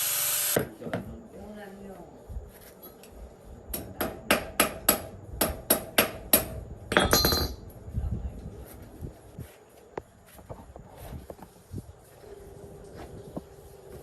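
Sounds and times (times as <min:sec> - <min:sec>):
metal ringing clatter: 0:06.9 - 0:07.6.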